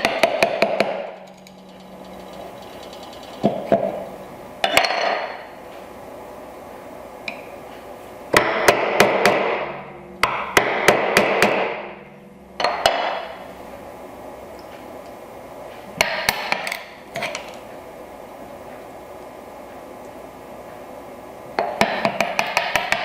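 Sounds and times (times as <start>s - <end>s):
mallet striking chisel: 0.0s - 1.1s, 8.4s - 9.6s, 10.2s - 11.8s, 21.6s - 23.0s.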